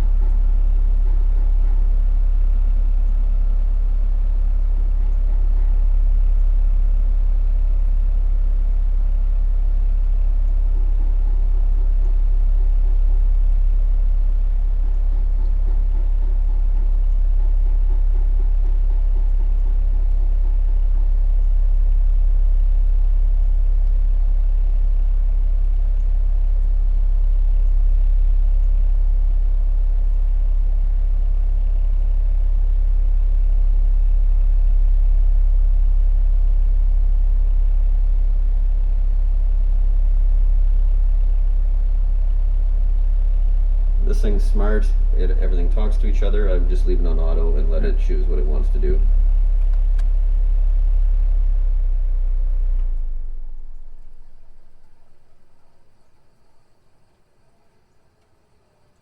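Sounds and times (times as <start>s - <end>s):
heat pump humming: 0.0s - 59.0s.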